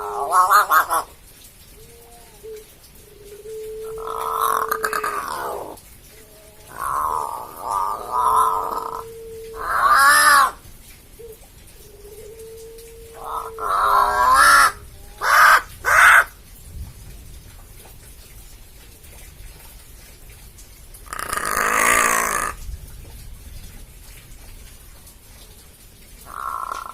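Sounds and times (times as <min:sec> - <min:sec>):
crow harsh calls: 0:00.0 - 0:01.1, 0:03.9 - 0:05.8, 0:06.5 - 0:10.6, 0:13.2 - 0:16.3, 0:21.1 - 0:22.6, 0:26.2 - 0:26.9.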